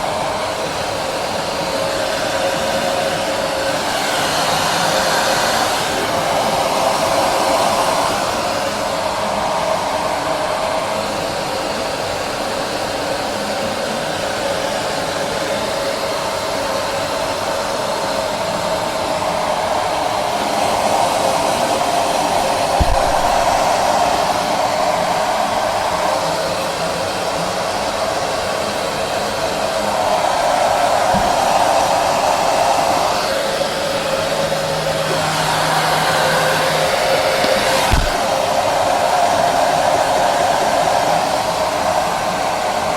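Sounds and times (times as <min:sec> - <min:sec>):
hair dryer blowing: 0:00.0 - 0:42.9
low thump: 0:22.8 - 0:23.6.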